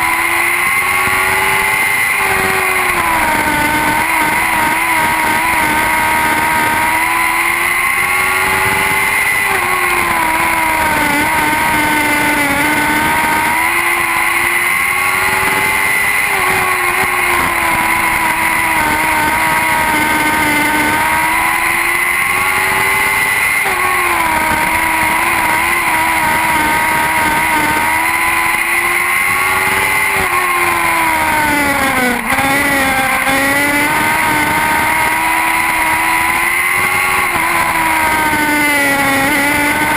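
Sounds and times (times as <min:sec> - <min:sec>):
racing car engines at high revs: 0:00.0 - 0:39.9.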